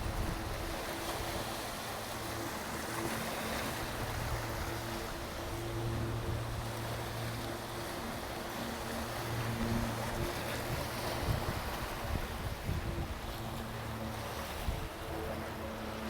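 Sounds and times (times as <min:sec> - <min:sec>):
sea waves washing on a beach: 0:00.0 - 0:16.0
wind buffeting microphone: 0:10.1 - 0:14.0.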